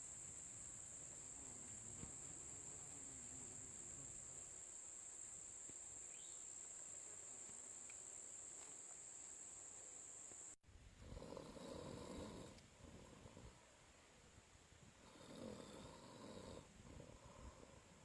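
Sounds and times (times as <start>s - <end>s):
insects trilling: 0.0s - 10.6s.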